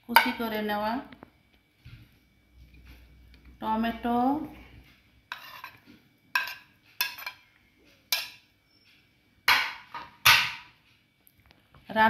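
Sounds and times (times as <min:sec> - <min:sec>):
kitchenware clattering: 0:05.3 - 0:05.8, 0:06.4 - 0:07.5, 0:08.1 - 0:08.4, 0:09.5 - 0:10.8.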